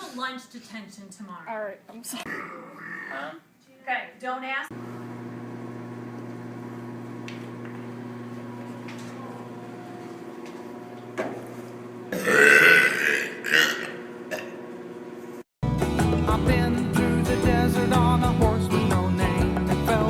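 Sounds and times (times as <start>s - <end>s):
person burping: 2.2s - 3.4s, 12.1s - 14.6s.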